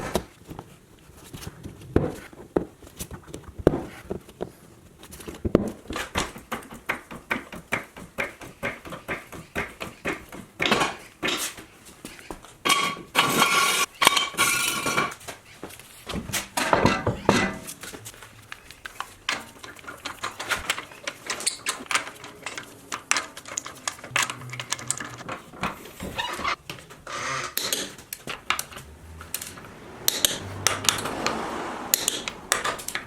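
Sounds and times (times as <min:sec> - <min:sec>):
regular tool clicks: 0:17.8 - 0:33.0
rattling bursts: 0:20.1 - 0:33.0.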